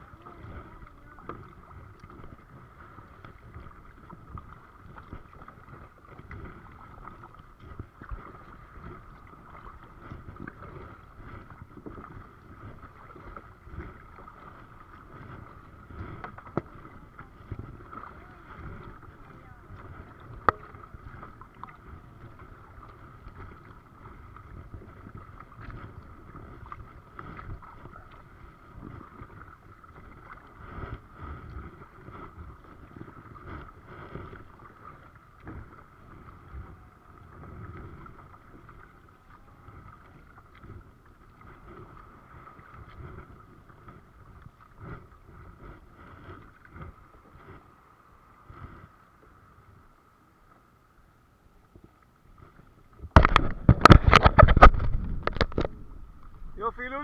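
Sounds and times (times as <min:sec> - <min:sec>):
paddle splashing water: 0:00.0 - 0:57.0
wind buffeting microphone: 0:53.0 - 0:57.0.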